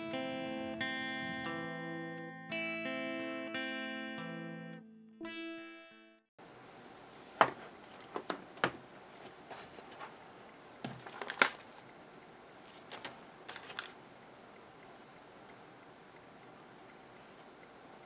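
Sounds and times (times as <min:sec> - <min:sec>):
faint room hiss: 0:06.4 - 0:18.0
objects clicking and knocking: 0:10.8 - 0:11.8, 0:12.7 - 0:14.0.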